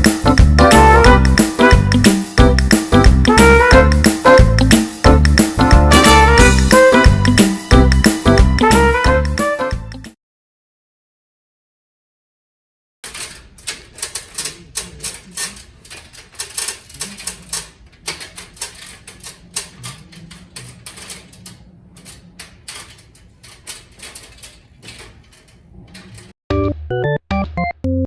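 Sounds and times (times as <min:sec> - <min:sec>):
rapid clicking and tapping: 0:00.0 - 0:06.1, 0:13.0 - 0:25.5.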